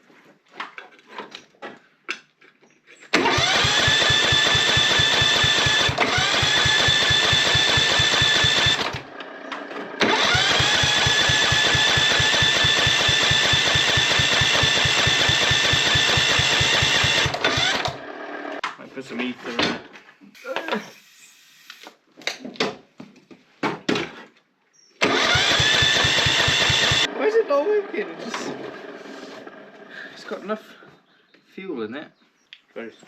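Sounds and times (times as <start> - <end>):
electric starter cranking engine: 3.1 - 18.6, 25.0 - 29.9.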